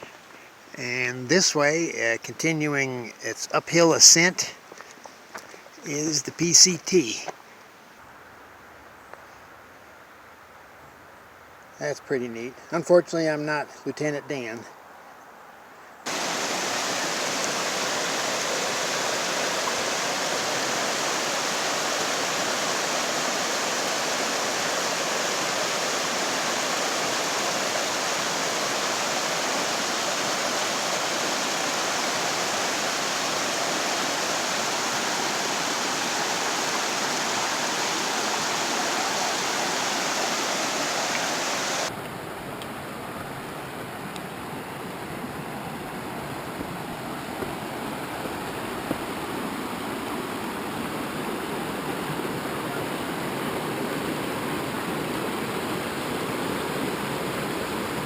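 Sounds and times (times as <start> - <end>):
creek water rushing: 0.0 - 7.2, 16.0 - 58.0
steady hiss: 0.0 - 8.2, 16.1 - 41.9.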